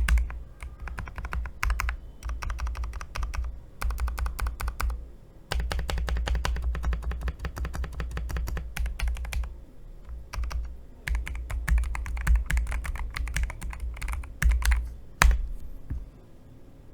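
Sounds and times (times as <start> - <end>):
keyboard key clicks: 10.1 - 16.0.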